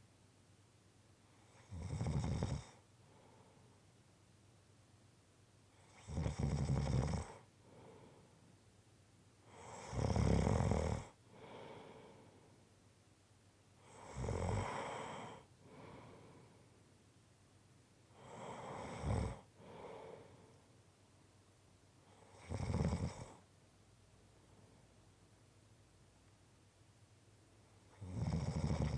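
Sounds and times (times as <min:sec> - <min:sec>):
person snoring: 0:14.0 - 0:15.4, 0:18.2 - 0:20.1, 0:28.0 - 0:28.9.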